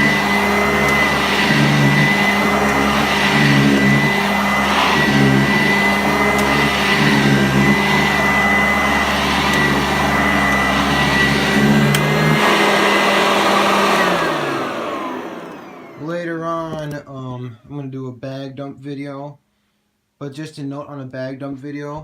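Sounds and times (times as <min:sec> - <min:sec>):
upright vacuum cleaner running: 0:00.0 - 0:17.0.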